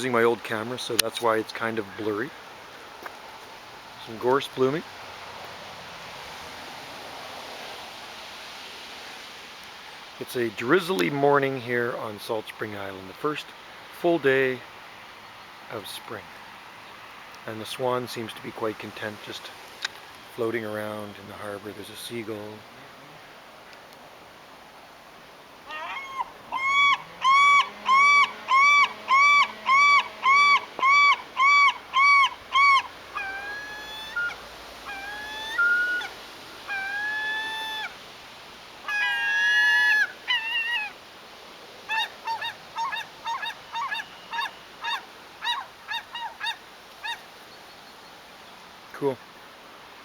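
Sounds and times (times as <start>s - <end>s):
gulls calling: 25.6s - 38.0s, 38.8s - 41.0s, 41.9s - 47.4s.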